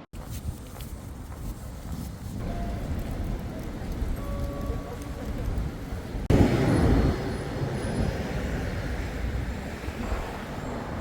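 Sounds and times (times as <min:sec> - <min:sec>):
motor traffic rumble: 0:00.2 - 0:11.0.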